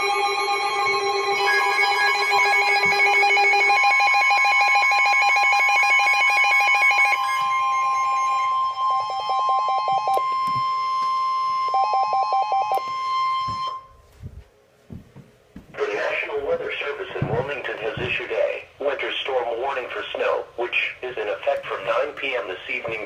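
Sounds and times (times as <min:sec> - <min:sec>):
rapid pulsing electronic beeps: 0:00.0 - 0:12.8
long steady alarm tone: 0:00.0 - 0:14.1.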